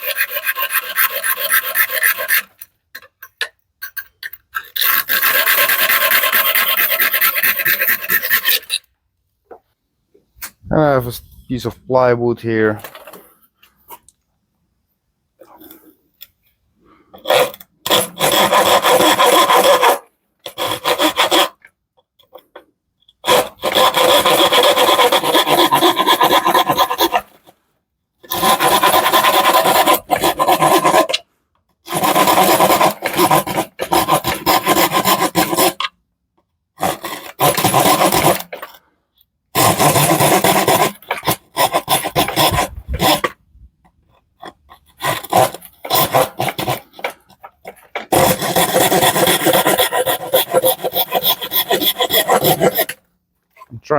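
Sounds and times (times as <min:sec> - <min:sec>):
handsaw rasping through plywood: 0:00.0 - 0:02.6, 0:04.6 - 0:08.8, 0:17.2 - 0:21.6, 0:23.2 - 0:27.5, 0:28.2 - 0:31.2, 0:31.8 - 0:36.0, 0:36.8 - 0:38.8, 0:39.5 - 0:43.4, 0:44.1 - 0:53.1.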